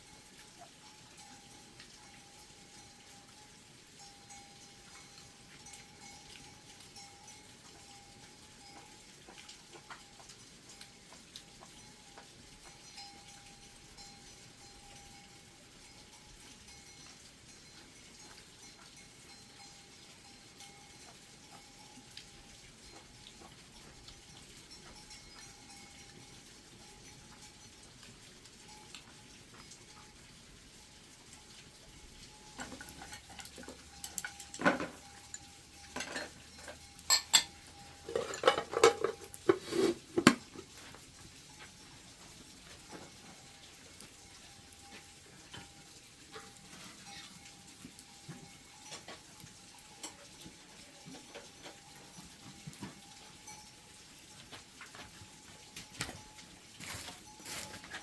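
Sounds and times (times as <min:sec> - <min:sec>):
dishes and utensils clinking: 0:32.4 - 0:43.6, 0:54.4 - 0:58.0.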